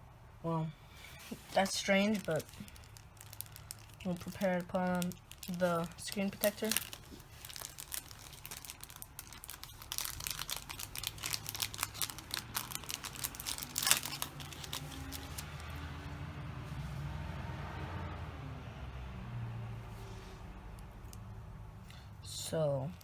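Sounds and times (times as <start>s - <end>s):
plastic packaging crinkling: 1.0s - 15.9s
loud plastic crackle: 1.0s - 16.0s.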